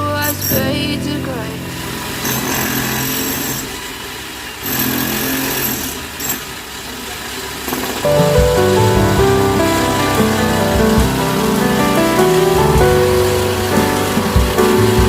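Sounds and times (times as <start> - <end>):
wire saw cutting concrete: 2.3 - 3.9, 4.6 - 6.5.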